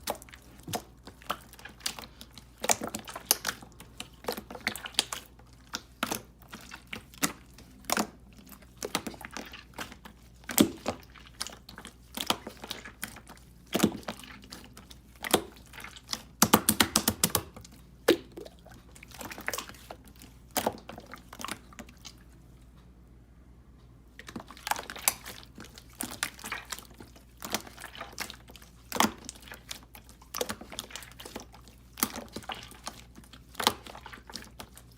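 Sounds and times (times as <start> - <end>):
clicks and taps: 16.4 - 18.3.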